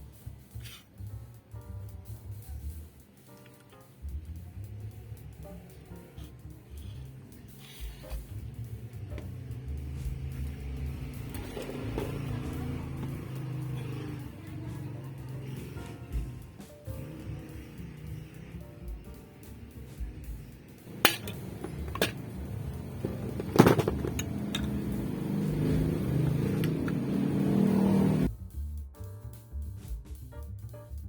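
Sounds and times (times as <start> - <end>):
background music with low notes: 0.0 - 31.0
small motor running: 9.6 - 28.3
sharp metallic clicks and knocks: 20.8 - 27.2.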